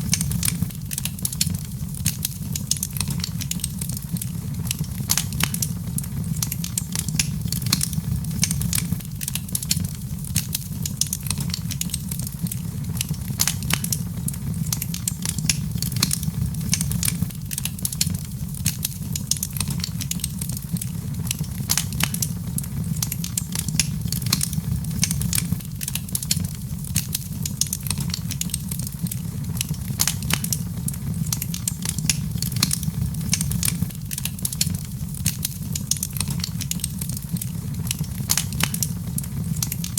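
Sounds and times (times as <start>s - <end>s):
fire crackling and popping: 0.0s - 39.9s
low rumble of flames: 0.0s - 39.9s.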